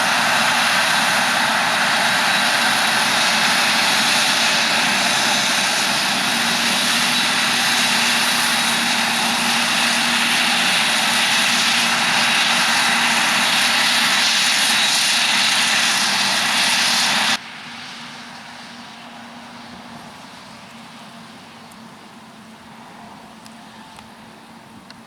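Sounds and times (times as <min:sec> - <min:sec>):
heavy farm machinery running: 0:00.0 - 0:19.4
steady machine whine: 0:00.0 - 0:22.0.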